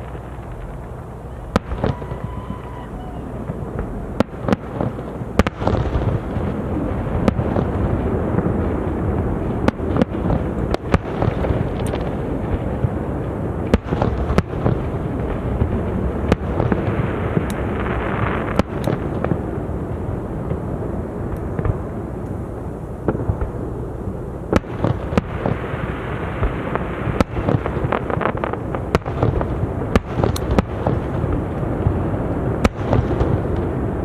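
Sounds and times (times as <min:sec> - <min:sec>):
rumble of overlapping reports: 0:00.0 - 0:05.4
crackling hiss: 0:00.0 - 0:34.0
fireworks bangs: 0:00.0 - 0:34.0.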